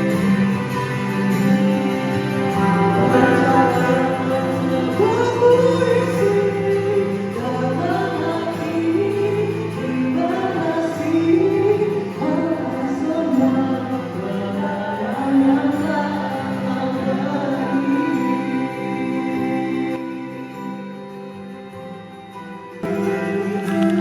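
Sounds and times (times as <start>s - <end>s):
slow melody over held notes: 0.0s - 14.2s.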